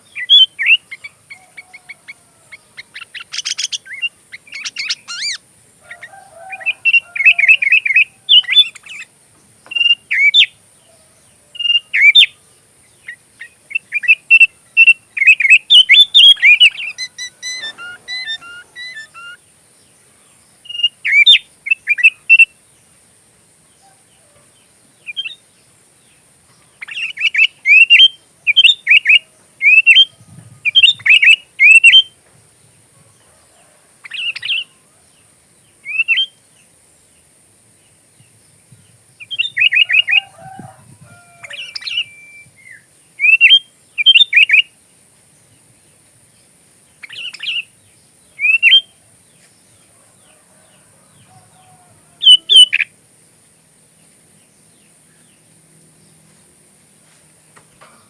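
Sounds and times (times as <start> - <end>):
bird singing whistled phrases: 13.7 - 19.4, 41.4 - 44.7, 48.4 - 48.9, 52.2 - 52.9.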